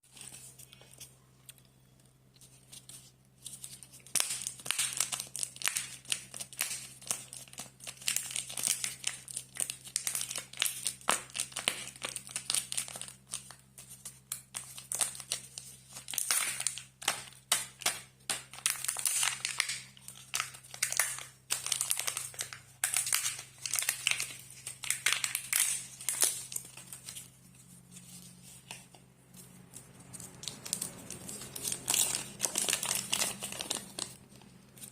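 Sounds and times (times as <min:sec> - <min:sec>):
wrappers crinkling and tearing: 0:02.8 - 0:34.9.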